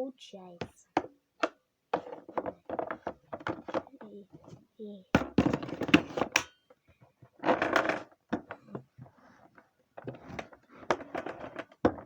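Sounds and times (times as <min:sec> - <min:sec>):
plastic parts clicking and knocking: 0:00.6 - 0:04.6, 0:05.2 - 0:12.0
plastic rustling and scraping: 0:08.9 - 0:12.0.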